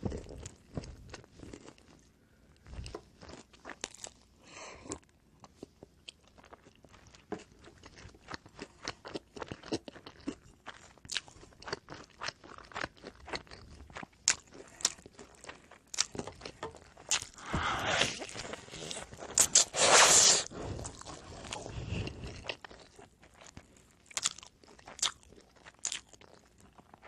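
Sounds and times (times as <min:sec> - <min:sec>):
crunchy bread chewing: 0:00.0 - 0:27.0.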